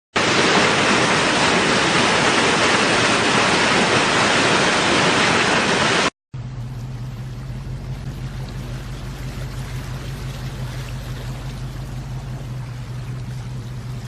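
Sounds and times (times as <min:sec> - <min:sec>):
waterfall rushing: 0:00.2 - 0:06.1
quieter water rushing: 0:00.2 - 0:14.0
steady low hum: 0:06.4 - 0:14.0.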